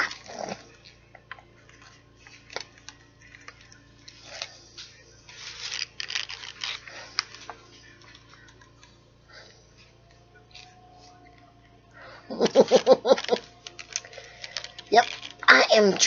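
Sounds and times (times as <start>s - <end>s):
wrapper crinkling: 5.3s - 8.9s, 12.5s - 16.0s.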